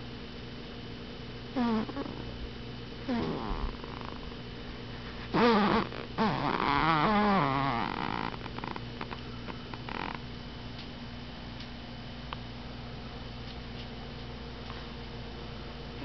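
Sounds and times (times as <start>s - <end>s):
baby snoring: 1.6s - 2.2s, 3.1s - 4.3s, 5.3s - 10.2s.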